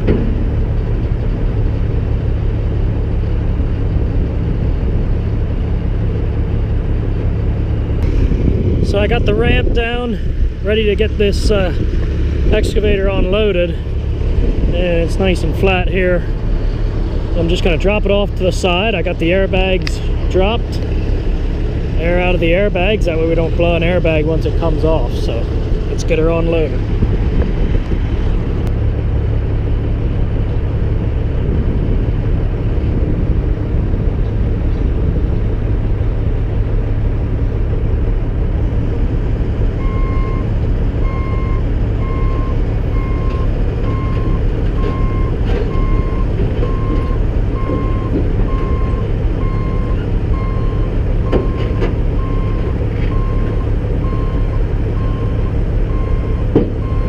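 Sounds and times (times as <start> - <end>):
excavator diesel engine running: 0.0 - 57.0
travel alarm beeping: 55.9 - 57.0.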